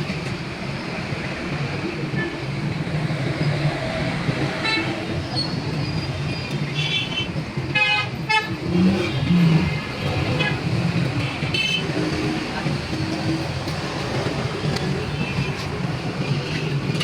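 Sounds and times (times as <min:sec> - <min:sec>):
traffic hum: 0:00.0 - 0:17.0
vehicle horns tooting: 0:06.8 - 0:10.8, 0:11.4 - 0:12.0.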